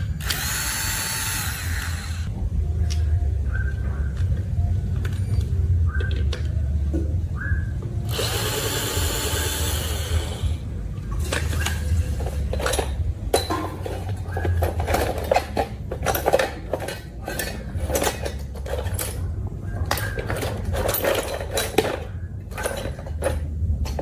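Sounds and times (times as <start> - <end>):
low steady hum: 0.0 - 24.0
small hard parts clinking: 8.1 - 24.0.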